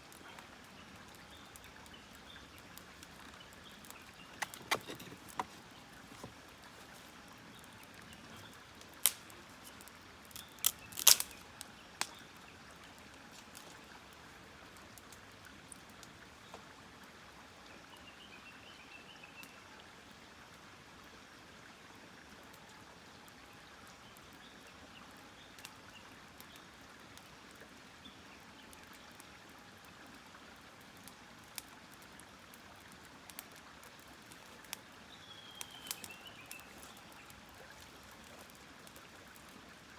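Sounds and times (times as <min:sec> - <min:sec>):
campfire popping and crackling: 0:00.0 - 0:16.2, 0:30.8 - 0:39.9
faint bird chirps: 0:35.1 - 0:37.8.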